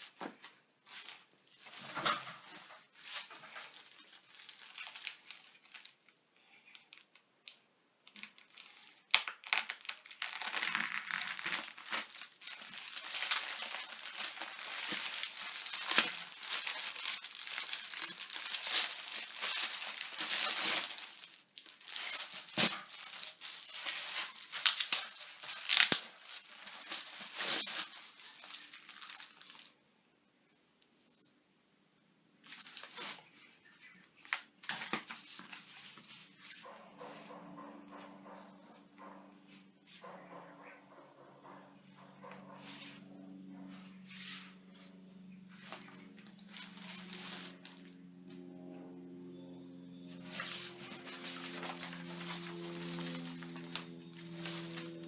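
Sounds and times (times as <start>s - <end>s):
packaging ripping: 3.0s - 7.1s, 8.0s - 29.7s, 32.5s - 33.3s, 45.6s - 48.0s, 49.9s - 55.0s
packaging crinkling: 3.0s - 29.8s, 32.5s - 36.6s, 45.4s - 48.0s, 49.9s - 55.0s.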